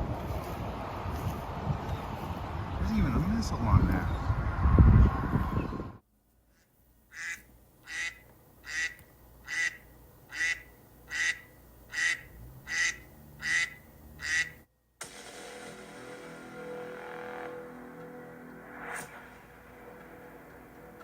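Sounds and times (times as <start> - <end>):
bird giving short harsh calls: 7.1 - 14.6.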